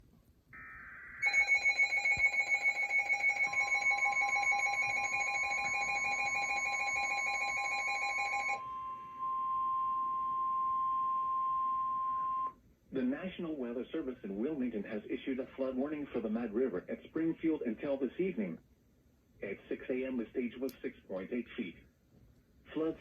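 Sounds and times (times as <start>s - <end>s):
rapidly pulsing radio alarm: 0.6s - 10.9s
steady warning alarm tone: 0.6s - 12.6s.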